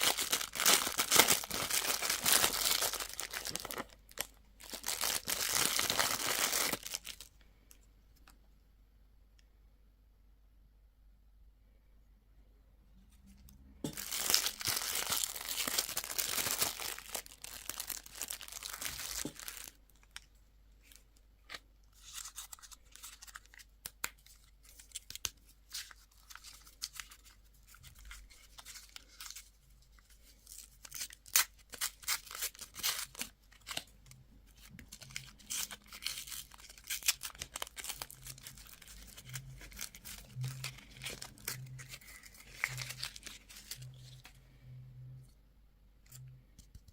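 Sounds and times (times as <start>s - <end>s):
candy wrappers tearing and crinkling: 0.0s - 7.4s, 13.9s - 20.3s, 22.0s - 44.3s.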